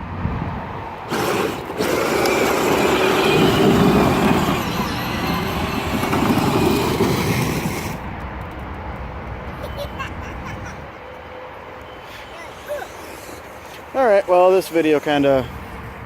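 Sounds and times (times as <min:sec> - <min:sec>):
electric toy car motors whining: 0:01.1 - 0:08.0
plastic wheels spinning on ground: 0:01.1 - 0:08.0.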